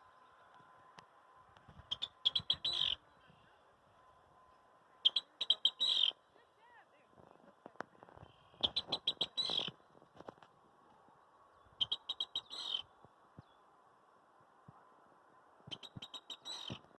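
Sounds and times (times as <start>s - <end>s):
marsh bird singing: 1.8s - 3.8s, 4.4s - 6.5s, 7.5s - 10.0s, 11.0s - 13.8s, 15.7s - 16.9s.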